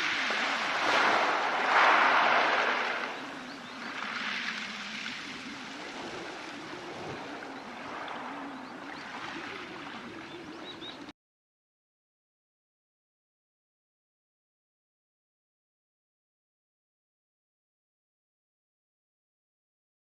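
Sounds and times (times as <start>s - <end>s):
waves washing over pebbles: 0.0s - 10.0s.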